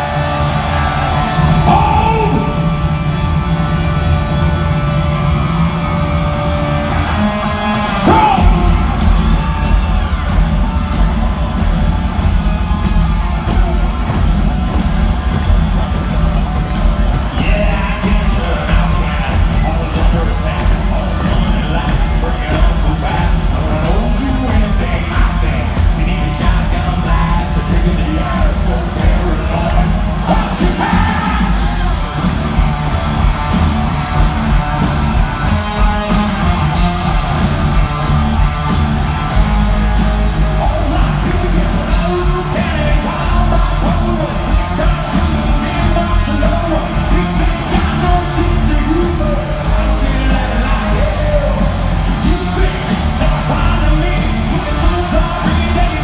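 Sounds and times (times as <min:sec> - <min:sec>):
singer yelling vocals: 0:00.0 - 0:03.0, 0:07.1 - 0:09.8, 0:17.2 - 0:32.3, 0:39.2 - 0:56.0
live hard rock band: 0:00.0 - 0:56.0.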